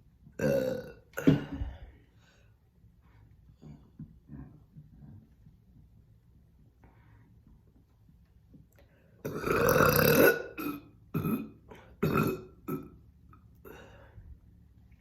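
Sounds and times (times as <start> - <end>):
woman burping: 0.4 - 1.8, 9.2 - 13.0.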